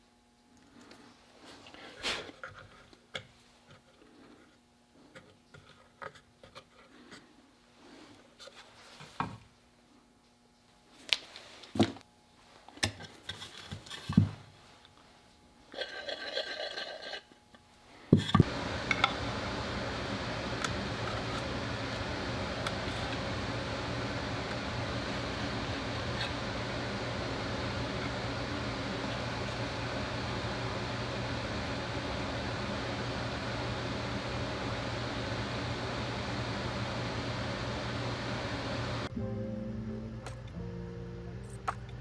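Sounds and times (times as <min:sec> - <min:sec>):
steady machine noise: 0:18.4 - 0:39.1.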